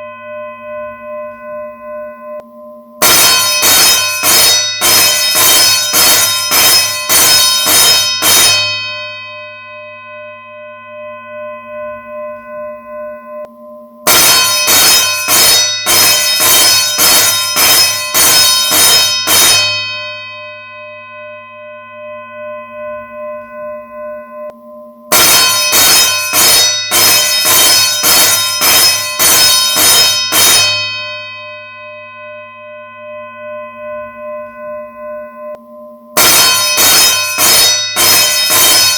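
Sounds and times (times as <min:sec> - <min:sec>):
school bell ringing: 0:03.0 - 0:12.5, 0:14.1 - 0:23.6, 0:25.1 - 0:35.6, 0:36.2 - 0:38.9.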